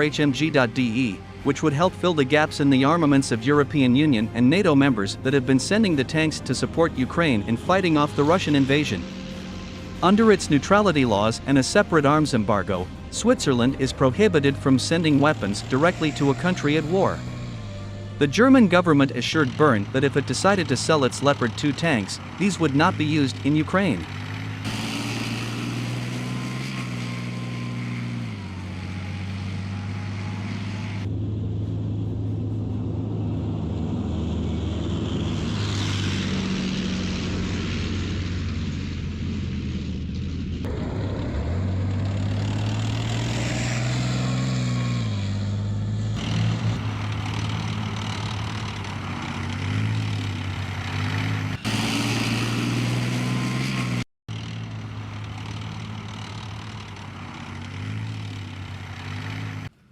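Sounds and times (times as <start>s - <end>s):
tank diesel engine revving: 0.0s - 59.9s.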